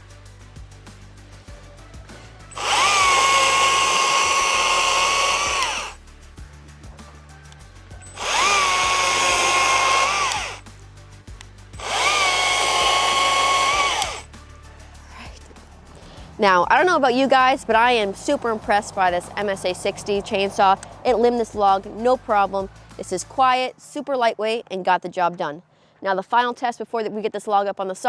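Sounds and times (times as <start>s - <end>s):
battery chainsaw whine: 2.5s - 6.0s, 8.1s - 10.6s, 11.8s - 14.3s.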